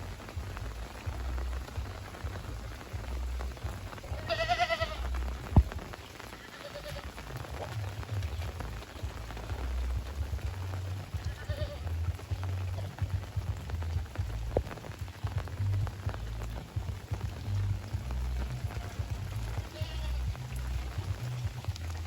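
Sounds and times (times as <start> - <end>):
steady rain falling: 0.0 - 22.0
faint bleat-like animal call: 4.1 - 5.2, 6.3 - 7.2, 11.1 - 12.0, 18.6 - 20.4.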